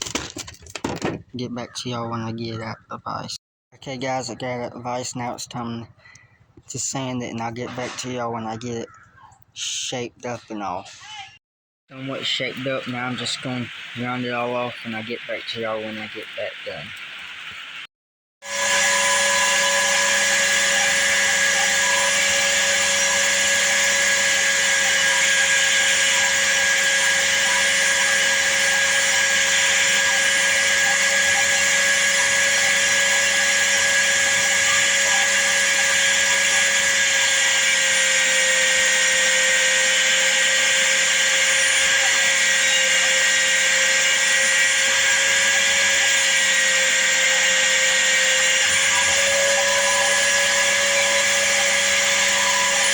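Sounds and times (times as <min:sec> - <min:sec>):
electric sander whining: 0:11.9 - 0:52.9.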